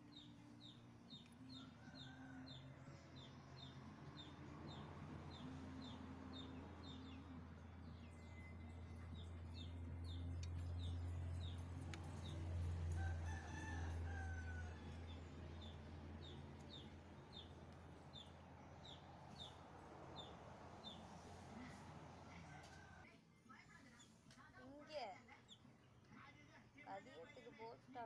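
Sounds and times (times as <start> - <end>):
rooster crowing: 1.6 - 2.9, 12.8 - 15.8, 22.3 - 23.1.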